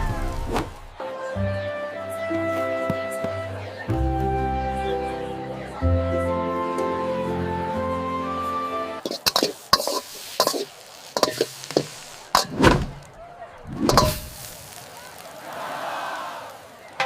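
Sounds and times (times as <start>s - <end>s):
heavy thuds: 12.4s - 14.3s.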